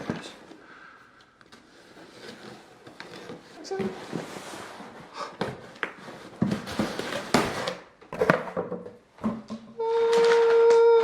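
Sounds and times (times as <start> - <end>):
cardboard package rustling: 1.4 - 7.8.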